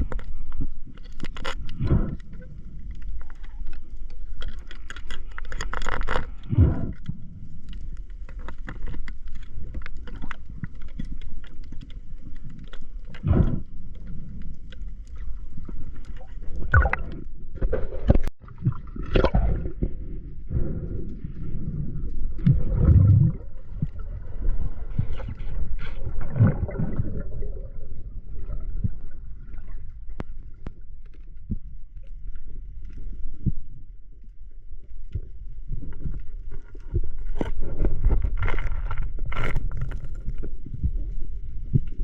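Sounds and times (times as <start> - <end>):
water sloshing and gurgling: 0.0 - 42.0
low rumble: 13.2 - 32.0.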